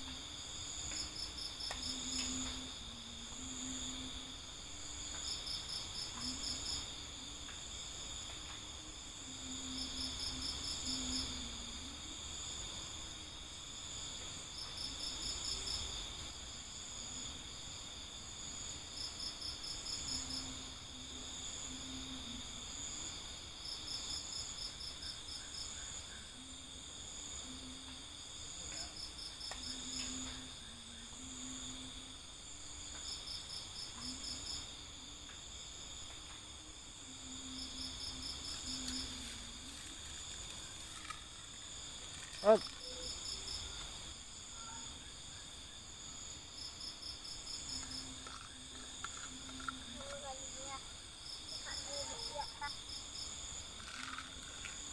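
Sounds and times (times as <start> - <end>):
insect rapid chirps: 0.0 - 54.9
insect high trill: 36.8 - 54.9.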